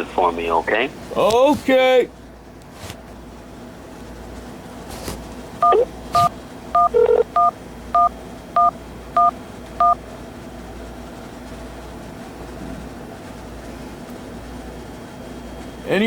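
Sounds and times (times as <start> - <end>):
telephone keypad tones: 5.6 - 10.0.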